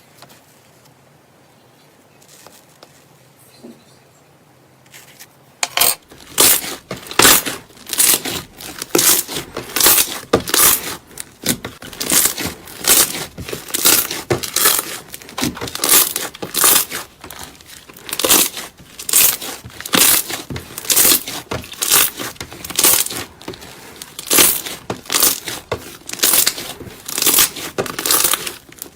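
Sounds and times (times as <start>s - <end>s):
slime squishing: 6.0s - 28.9s.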